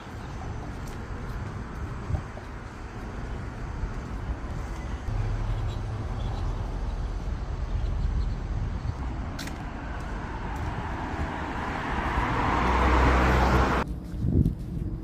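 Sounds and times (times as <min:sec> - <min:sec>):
road traffic noise: 0:00.0 - 0:15.0
vehicle passing close by: 0:03.3 - 0:13.9.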